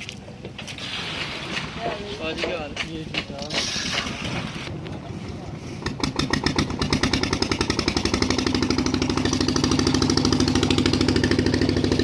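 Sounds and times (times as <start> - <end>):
concrete mixer engine pulsing: 3.4 - 12.0.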